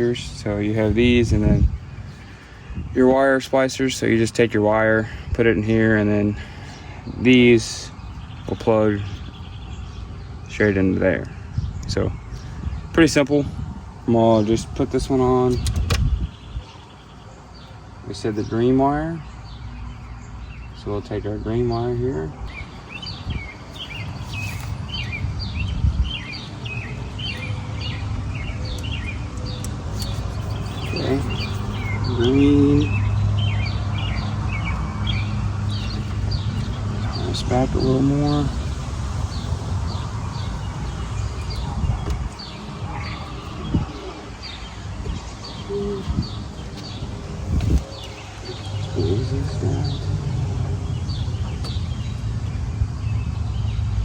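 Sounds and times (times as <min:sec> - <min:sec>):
bird chirping: 0:00.0 - 0:54.0
steady low rumble: 0:19.2 - 0:54.0.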